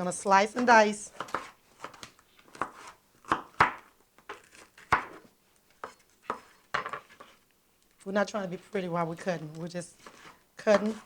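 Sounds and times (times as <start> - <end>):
knife chopping on cutting board: 0.6 - 7.3, 10.0 - 11.0.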